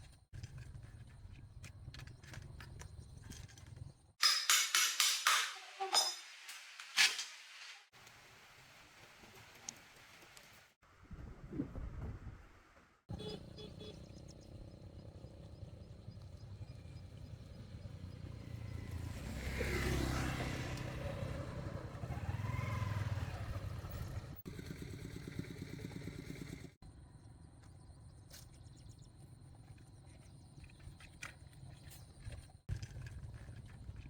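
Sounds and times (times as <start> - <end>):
motorbike passing: 13.1 - 26.8.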